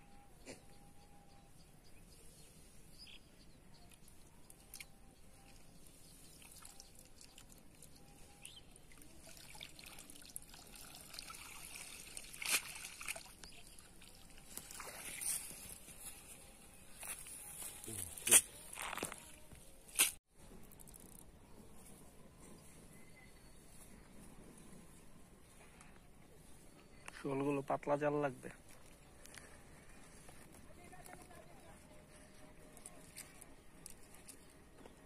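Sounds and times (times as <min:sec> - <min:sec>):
water trickling and dripping: 0:06.3 - 0:08.0, 0:08.8 - 0:15.1
water splashes: 0:08.9 - 0:15.4.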